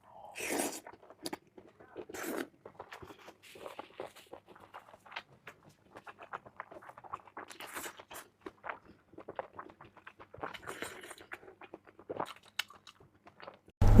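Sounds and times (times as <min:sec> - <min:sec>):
food crunching: 0:00.4 - 0:13.7.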